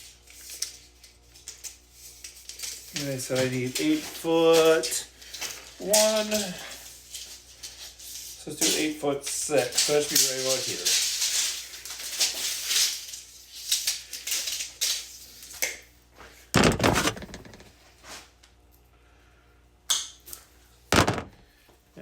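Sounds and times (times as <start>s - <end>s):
wire rustling and clicking: 0.3s - 15.8s, 16.6s - 17.8s
loud knocks: 16.6s - 17.7s, 20.9s - 21.4s.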